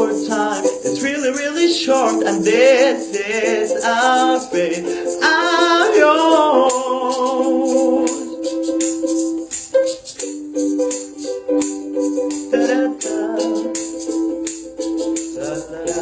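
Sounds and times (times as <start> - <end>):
person singing: 0.0 - 10.0, 10.6 - 16.0
acoustic pop song: 0.0 - 16.0
shaker beat: 0.0 - 16.0.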